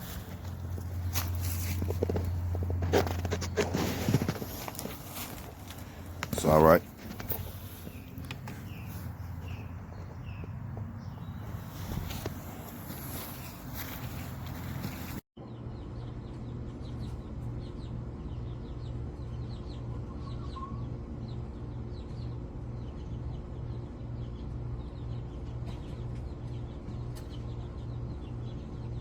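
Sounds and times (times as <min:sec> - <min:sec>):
pulsing low hum: 0:00.0 - 0:14.9
birds chirping: 0:00.0 - 0:29.0.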